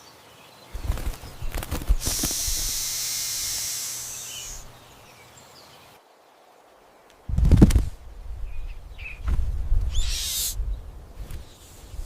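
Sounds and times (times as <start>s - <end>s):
snake hissing: 1.9s - 4.8s, 10.0s - 10.6s.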